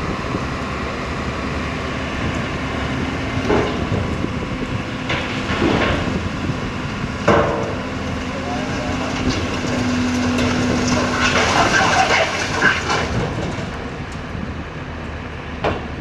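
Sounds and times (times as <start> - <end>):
excavator diesel engine running: 0.0 - 16.0
bucket scraping rock and gravel: 5.2 - 14.0.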